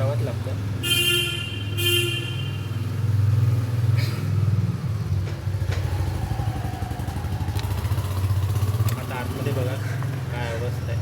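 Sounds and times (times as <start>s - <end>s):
motorcycle engine running: 4.6s - 11.0s.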